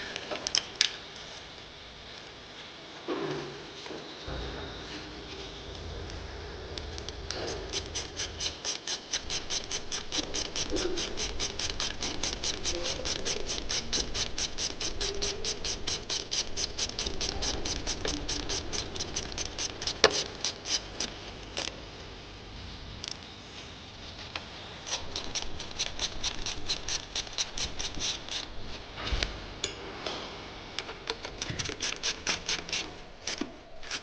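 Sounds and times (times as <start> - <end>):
bicycle freewheel ratchet clicking: 7.4 - 21.1.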